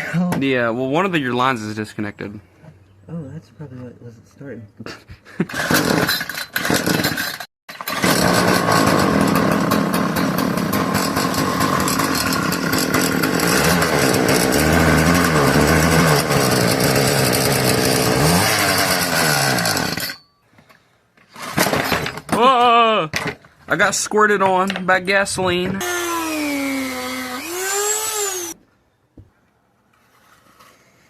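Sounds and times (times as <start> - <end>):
weed eater engine revving: 5.5 - 7.1, 7.8 - 20.0, 25.8 - 28.6.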